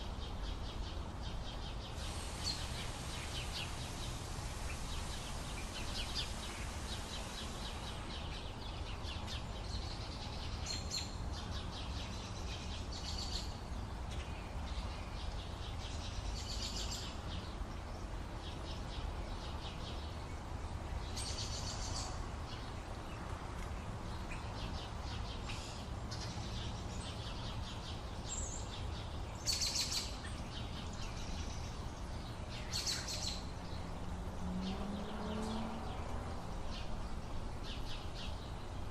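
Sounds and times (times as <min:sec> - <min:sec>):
birds chirping: 0:00.1 - 0:38.9.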